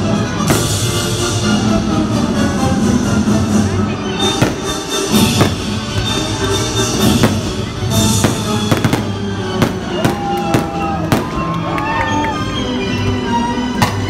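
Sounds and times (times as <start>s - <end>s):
music with drums: 0.1s - 11.4s
fireworks bangs: 0.4s - 1.0s, 4.3s - 11.6s.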